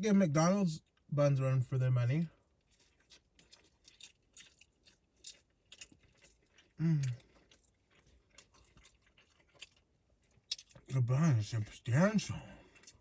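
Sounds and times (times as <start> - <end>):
close chewing mouth sounds: 2.3 - 13.0
person humming mm: 6.8 - 7.2.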